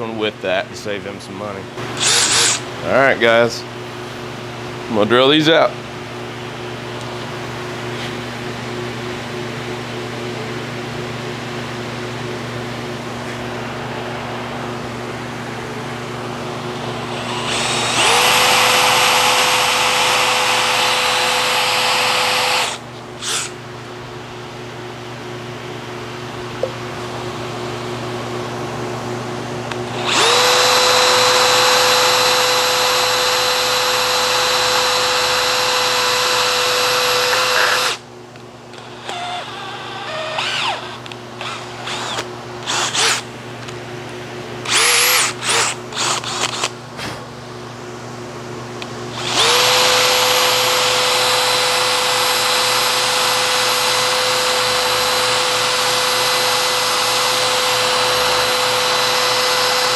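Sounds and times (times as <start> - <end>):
electric drill drilling steel: 2.0 - 2.7, 17.0 - 23.6, 29.9 - 38.0, 38.8 - 43.3, 44.6 - 46.7, 49.1 - 59.9.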